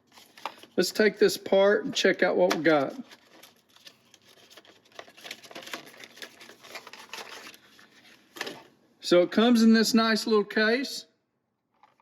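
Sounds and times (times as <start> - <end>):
plastic case clack: 2.5 - 3.5, 8.4 - 8.7.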